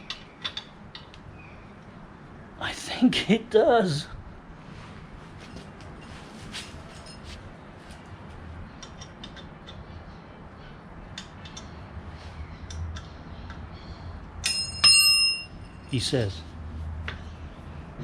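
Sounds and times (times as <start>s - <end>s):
small metallic clicks: 0.0s - 1.3s, 8.8s - 9.8s, 11.2s - 11.8s
loud metallic clink: 14.4s - 15.9s.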